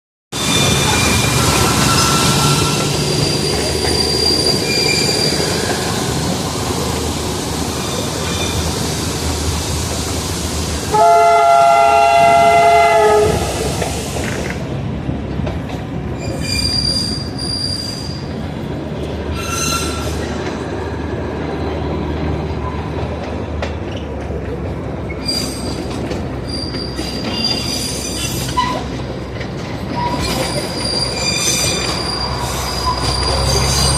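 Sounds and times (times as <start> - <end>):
wheels squealing: 0.4 - 10.4, 16.2 - 18.4, 19.3 - 20.5, 25.0 - 29.0, 29.8 - 33.9
train rumbling and rattling: 0.4 - 33.9
train horn blast: 10.9 - 13.7.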